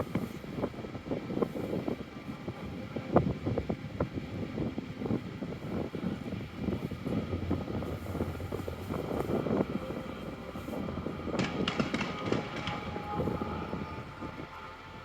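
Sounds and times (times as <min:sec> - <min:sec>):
fireworks crackling: 0:05.6 - 0:14.6
fireworks booming and popping: 0:10.8 - 0:13.9.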